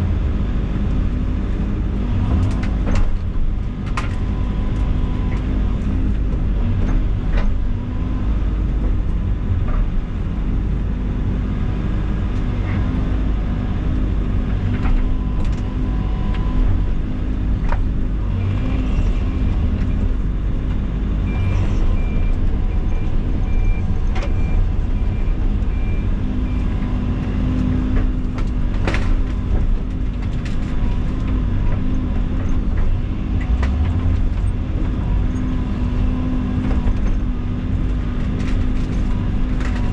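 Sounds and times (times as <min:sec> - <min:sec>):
heavy diesel engine running: 0:00.0 - 0:39.9
sharp cracks and knocks: 0:27.9 - 0:34.4.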